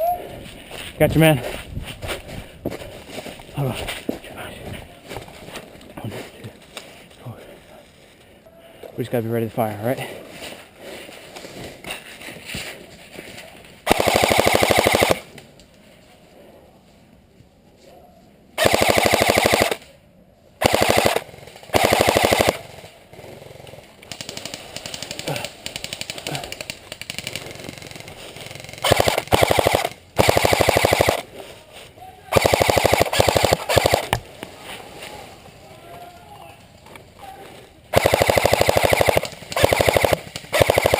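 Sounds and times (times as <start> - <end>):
distant rapid airsoft fire: 13.9 - 15.2, 18.6 - 19.8, 20.6 - 23.3, 24.1 - 31.2, 32.3 - 34.2, 37.9 - 40.9
airsoft rifle firing bursts: 13.9 - 15.3, 18.6 - 19.8, 20.6 - 23.3, 24.0 - 31.3, 32.3 - 34.2, 37.9 - 40.9.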